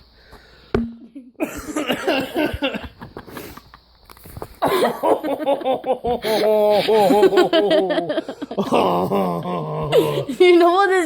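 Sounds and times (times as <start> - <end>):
man laughing uncontrollably: 1.0 - 3.6, 4.6 - 10.2
man wheezing and gasping: 6.1 - 7.3, 8.2 - 10.4.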